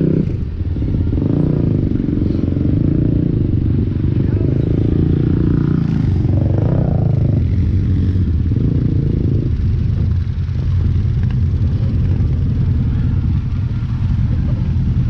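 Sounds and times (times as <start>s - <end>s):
off-road vehicle engine running: 0.0s - 15.0s.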